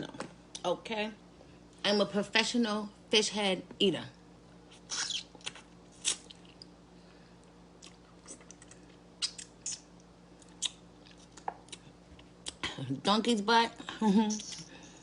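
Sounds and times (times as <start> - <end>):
wet mouth eating sounds: 4.7 - 6.8, 7.4 - 12.6.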